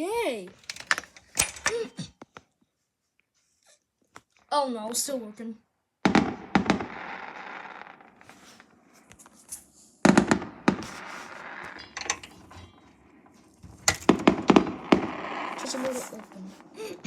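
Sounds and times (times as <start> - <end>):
fireworks bangs: 6.0 - 17.0
fireworks crackling: 6.0 - 17.0.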